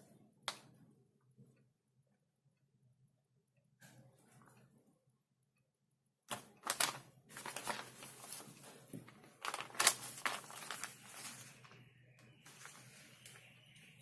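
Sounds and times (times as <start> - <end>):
food packaging crackling: 6.3 - 13.4.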